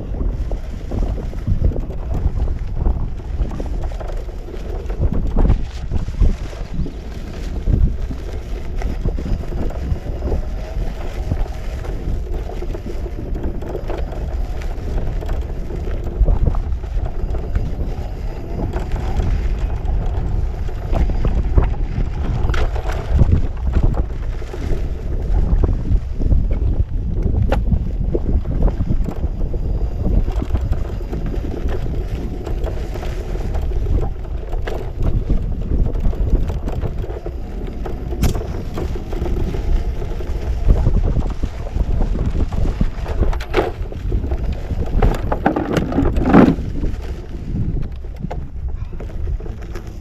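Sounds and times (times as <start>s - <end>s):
electric unicycle rumble: 0.0s - 50.0s
wind buffeting microphone: 0.0s - 50.0s
loud clatter: 30.4s - 48.2s
knocks and rattles: 40.5s - 47.1s.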